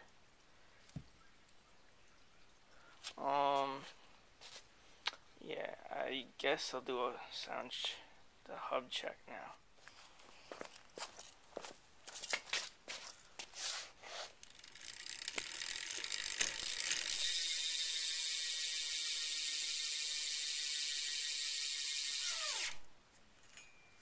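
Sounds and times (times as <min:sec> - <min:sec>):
bicycle hub ratcheting: 0:14.4 - 0:22.7.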